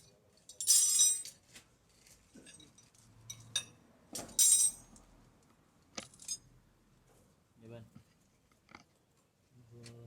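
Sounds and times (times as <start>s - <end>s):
metal tools clattering: 0.5s - 1.4s, 2.4s - 4.9s.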